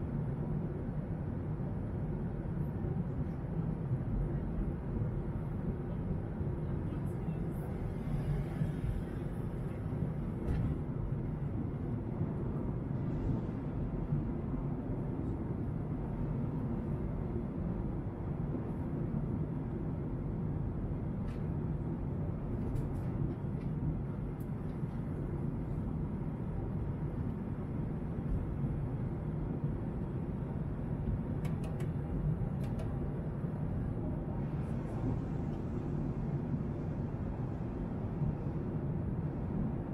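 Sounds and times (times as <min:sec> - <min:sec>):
airliner cabin rumble: 0:00.0 - 0:39.9
faint clicks: 0:31.4 - 0:32.0.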